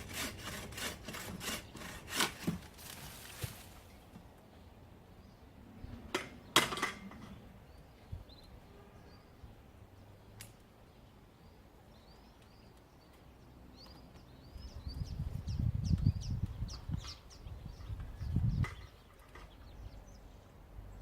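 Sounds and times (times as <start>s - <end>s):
small birds chirping: 7.3s - 21.0s.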